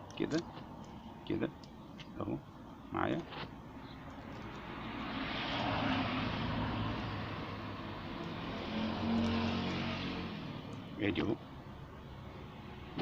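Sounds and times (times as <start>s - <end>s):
vehicle engine passing by: 4.6s - 11.0s.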